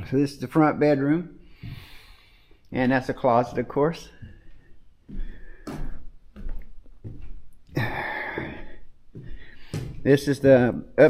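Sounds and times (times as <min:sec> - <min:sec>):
man breathing out heavily: 0:01.5 - 0:02.6, 0:05.1 - 0:06.0, 0:07.7 - 0:09.9.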